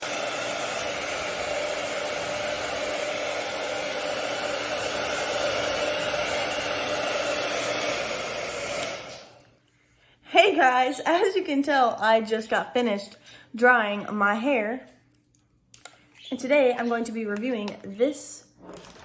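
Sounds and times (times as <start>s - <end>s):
hair dryer running: 0.0s - 9.6s.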